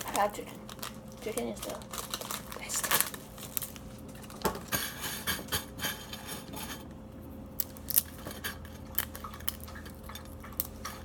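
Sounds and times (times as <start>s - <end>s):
packaging scraping: 0.0s - 6.8s.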